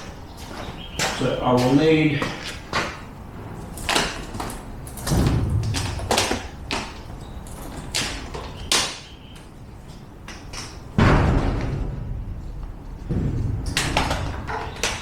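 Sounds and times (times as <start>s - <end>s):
heavy thud: 5.1s - 6.6s, 11.0s - 15.0s
low scraping rumble: 11.0s - 15.0s.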